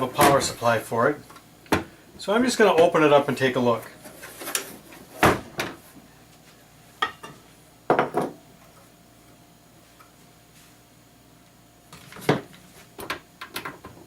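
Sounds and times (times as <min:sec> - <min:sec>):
hard objects knocking on workbench: 0:07.9 - 0:08.4.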